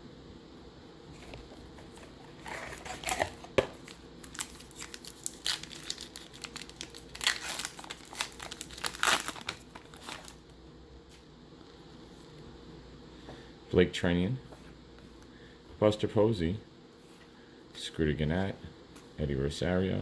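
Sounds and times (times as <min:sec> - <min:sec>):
foil wrapper tearing and crinkling: 0:02.3 - 0:10.4.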